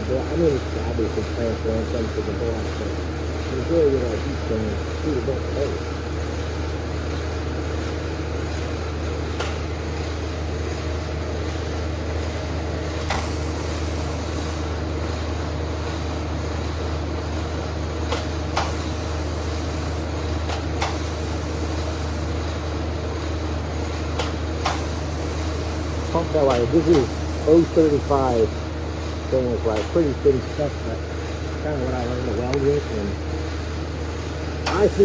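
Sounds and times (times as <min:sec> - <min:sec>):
welder humming: 0:00.0 - 0:35.0
welding arc striking click: 0:13.0 - 0:14.7, 0:18.1 - 0:22.3, 0:24.1 - 0:28.4, 0:34.6 - 0:35.0
high hiss: 0:34.7 - 0:35.0.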